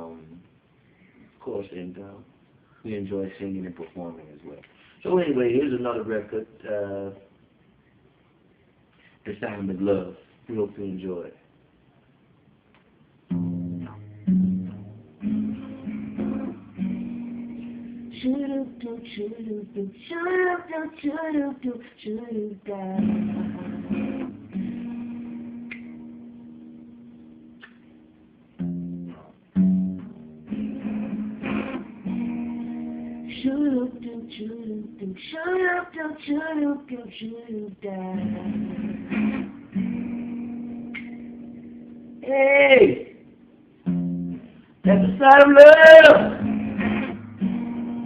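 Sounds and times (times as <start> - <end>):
acoustic guitar chords ringing: 13.3 - 20.0, 23.0 - 35.3, 38.1 - 48.0
person singing: 18.1 - 24.1, 33.2 - 38.8, 42.2 - 43.2, 44.8 - 46.6.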